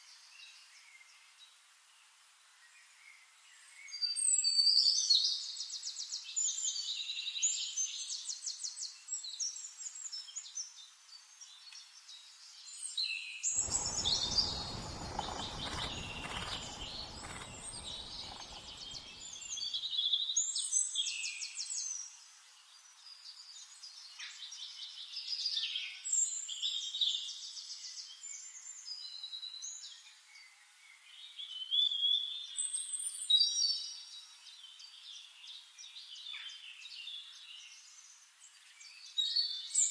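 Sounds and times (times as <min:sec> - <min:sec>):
bird chirps and trills: 0:13.6 - 0:19.5
low rumble: 0:13.6 - 0:19.5.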